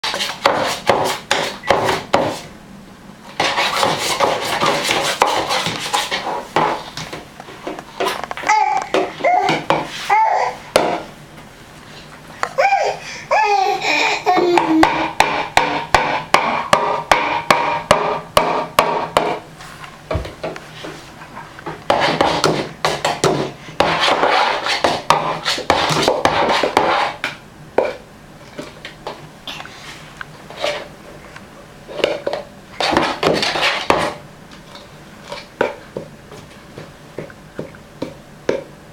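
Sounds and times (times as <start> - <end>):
baby squealing and babbling: 8.4 - 10.7, 12.6 - 15.1
banging a hard object: 10.7 - 11.1, 14.4 - 19.4.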